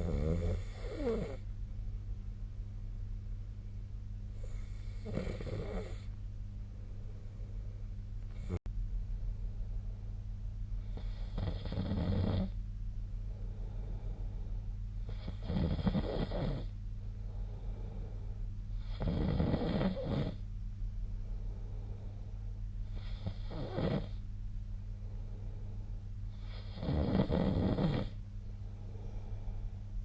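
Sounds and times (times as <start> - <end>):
person snoring: 0.0 - 1.4, 4.4 - 6.1, 11.0 - 12.6, 15.1 - 16.7, 18.8 - 20.4, 23.0 - 24.2, 26.4 - 28.2
steady low hum: 0.0 - 30.0.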